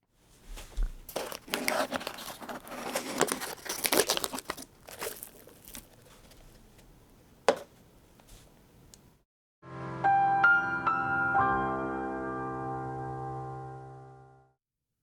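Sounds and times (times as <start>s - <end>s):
snack packaging crinkling: 1.0s - 7.6s.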